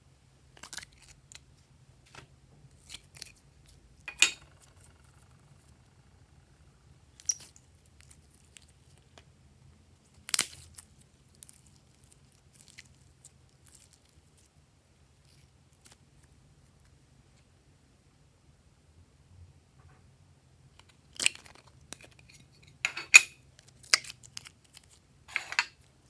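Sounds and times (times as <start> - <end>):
objects handled by hand: 0.5 - 5.8, 20.8 - 26.0.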